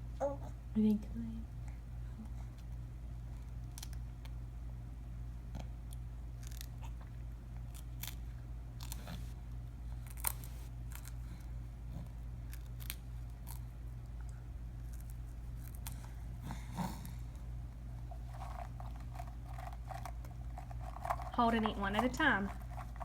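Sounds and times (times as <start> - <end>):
child chewing crunchy snack: 5.4 - 23.0.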